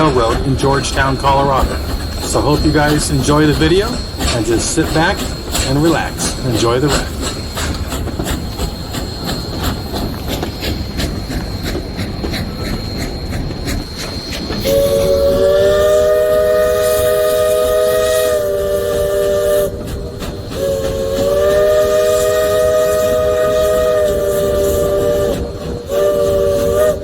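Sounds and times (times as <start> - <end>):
train rail clatter: 0.0 - 27.0
locomotive whistle chord: 14.6 - 19.8, 20.6 - 27.0.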